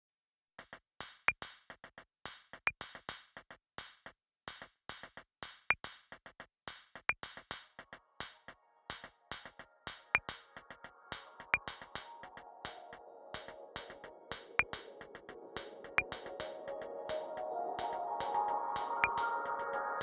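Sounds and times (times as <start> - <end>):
hissy percussion hits: 7.3 - 19.8.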